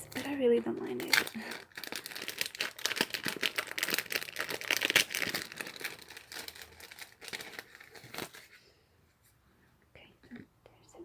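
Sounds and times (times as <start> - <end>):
packaging crinkling: 0.0 - 8.6.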